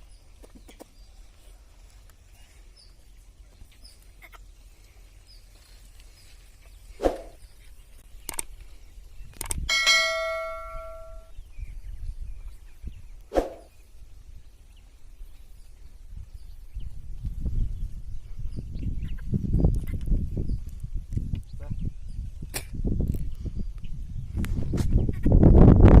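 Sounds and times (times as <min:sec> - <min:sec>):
metal bell ringing: 0:09.7 - 0:11.3.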